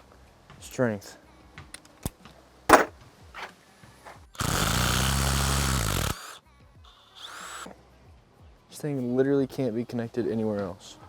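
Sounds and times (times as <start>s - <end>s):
power tool spinning bolt: 4.4s - 7.8s.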